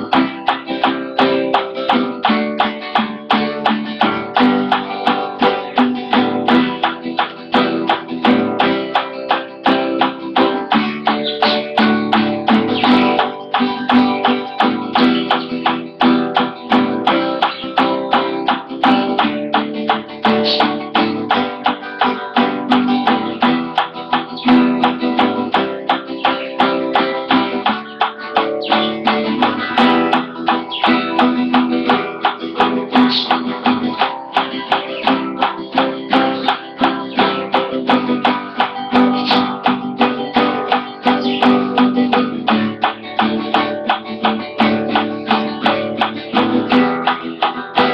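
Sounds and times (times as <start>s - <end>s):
guitar strummed with a pick: 0.0s - 47.9s.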